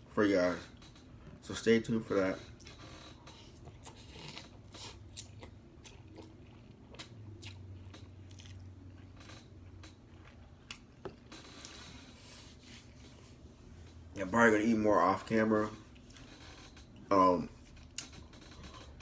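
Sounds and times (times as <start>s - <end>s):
person chewing crunchy food: 2.6s - 13.4s.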